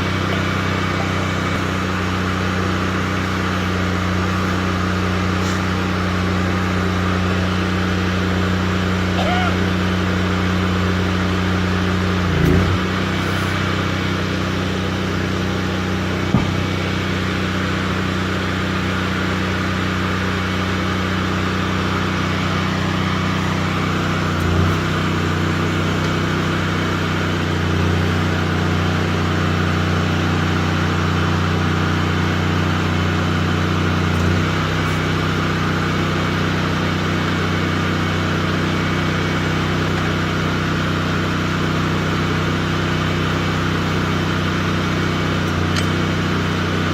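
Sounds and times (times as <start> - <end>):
machine engine running: 0.0 - 46.9
sharp knock: 16.3 - 16.6.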